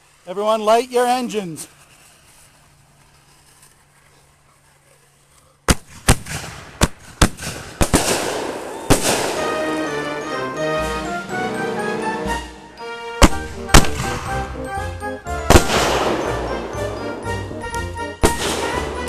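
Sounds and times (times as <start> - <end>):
fireworks hiss and crackle: 0.0 - 9.5
fireworks sharp bangs: 5.6 - 10.1, 13.2 - 14.6, 15.4 - 17.5, 18.2 - 19.0.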